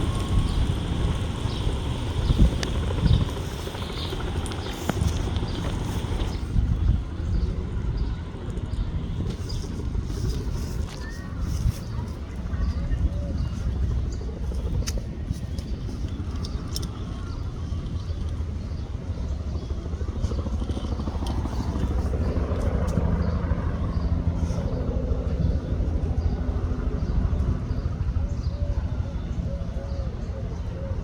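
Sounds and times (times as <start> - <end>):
helicopter rotor and turbine drone: 0.0 - 31.0.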